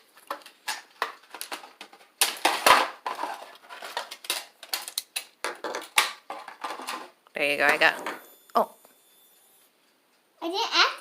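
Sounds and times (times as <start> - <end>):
plastic packaging rustling: 0.0 - 7.1.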